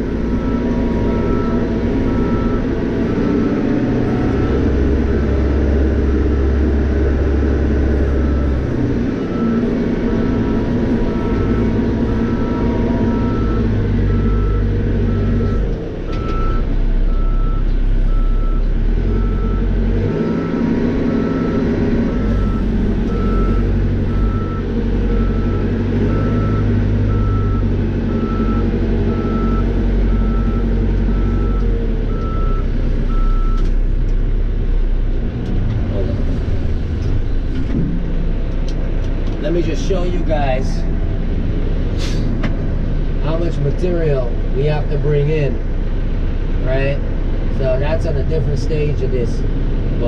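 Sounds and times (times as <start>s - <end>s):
diesel engine under load: 0.0s - 50.0s
reversing alarm beeping: 0.3s - 4.8s, 8.0s - 33.6s.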